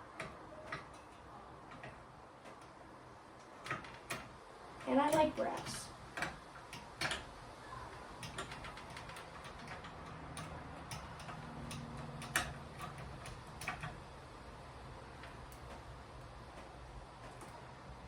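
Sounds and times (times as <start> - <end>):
clicks and taps of hardware and tools: 0.1 - 2.8, 3.4 - 14.1.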